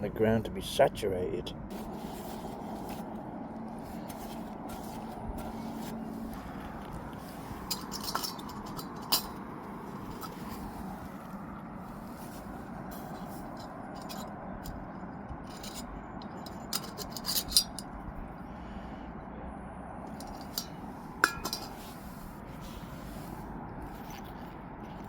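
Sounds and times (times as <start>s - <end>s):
metal cookware clinking: 7.6s - 9.4s, 15.7s - 17.8s, 20.2s - 21.8s.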